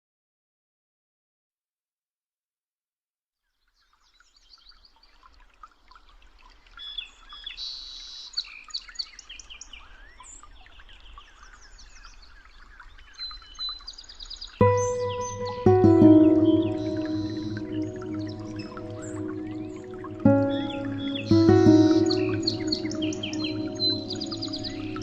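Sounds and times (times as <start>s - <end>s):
songbirds singing and chirping: 6.5s - 25.0s.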